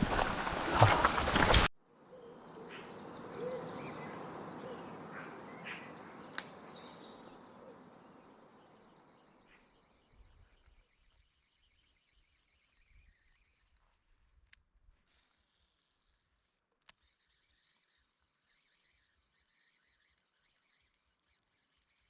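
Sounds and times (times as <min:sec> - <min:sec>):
faint outdoor ambience: 0:00.0 - 0:11.0
bird chirps: 0:02.0 - 0:10.7
sharp click: 0:06.3 - 0:06.6.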